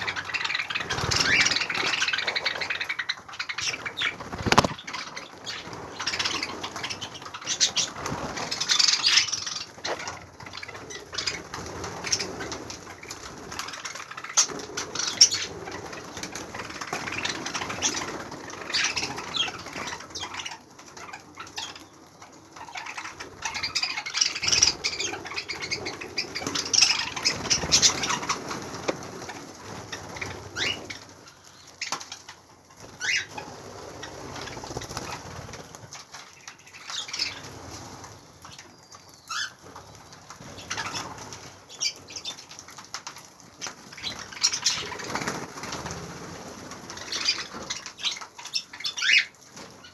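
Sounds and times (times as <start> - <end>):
budgerigars chattering: 0.0 - 11.4, 22.8 - 29.0, 33.0 - 33.4
wings fluttering: 0.0 - 38.7, 39.3 - 49.9.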